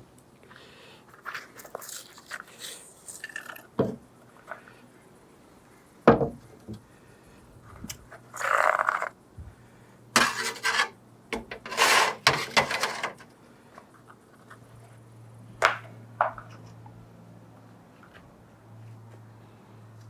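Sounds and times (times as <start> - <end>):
metal parts rubbing and clattering: 8.3 - 9.1, 10.2 - 13.2.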